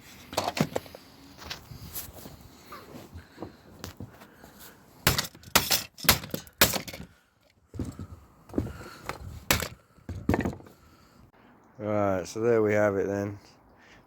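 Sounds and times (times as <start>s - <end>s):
printer parts clattering: 0.3s - 0.9s.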